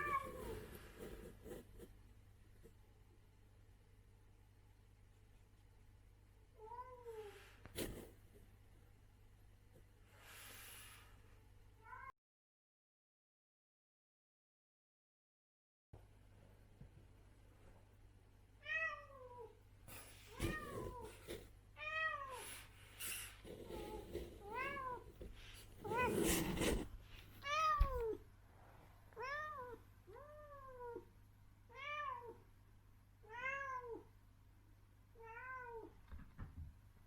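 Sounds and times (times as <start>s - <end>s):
cat meowing: 0.0s - 0.6s, 25.8s - 26.5s, 27.4s - 28.2s, 31.7s - 32.4s, 33.2s - 34.0s, 35.2s - 36.0s
rustling and scuffling: 23.2s - 29.0s.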